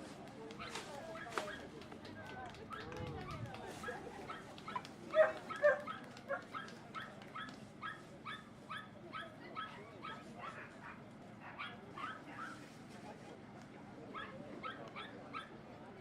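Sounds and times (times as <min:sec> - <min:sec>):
dog yipping: 0:04.3 - 0:10.6, 0:14.2 - 0:15.6.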